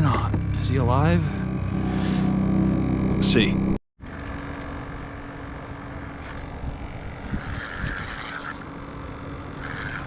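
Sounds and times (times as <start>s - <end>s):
wind rumbling on microphone: 6.0s - 10.0s.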